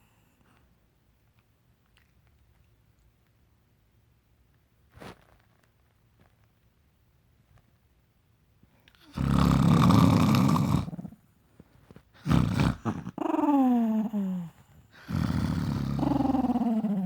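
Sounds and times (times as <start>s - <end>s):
small dog growling: 9.0s - 11.2s, 12.2s - 17.0s.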